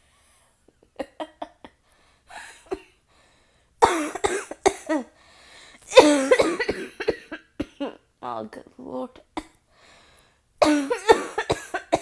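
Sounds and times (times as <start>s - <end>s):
woman coughing hoarsely: 3.8s - 5.1s, 5.9s - 8.0s, 10.6s - 12.0s.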